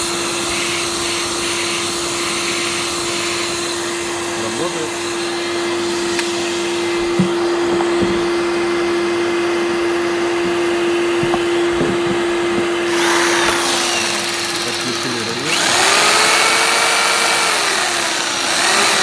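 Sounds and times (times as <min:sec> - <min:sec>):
vacuum cleaner running: 0:00.0 - 0:19.0
light knocks: 0:07.0 - 0:08.4, 0:10.4 - 0:12.8.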